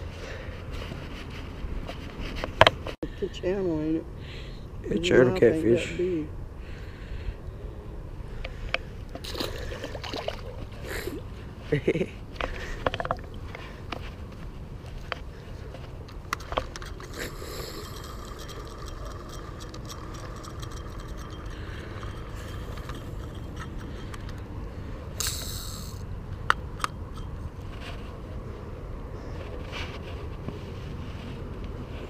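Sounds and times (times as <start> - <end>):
handling clicks and scrapes: 12.4 - 28.4.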